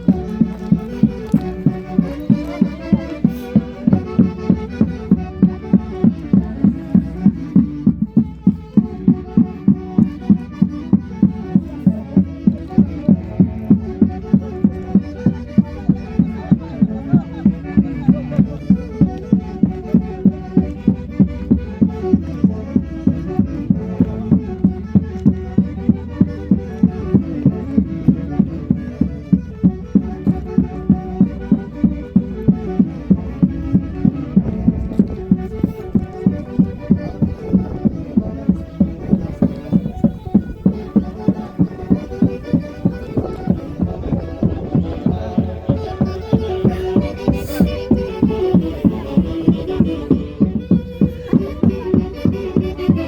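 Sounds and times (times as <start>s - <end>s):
folk orchestra playing dance tune: 0.0s - 53.0s
steady strong beat: 18.9s - 53.0s.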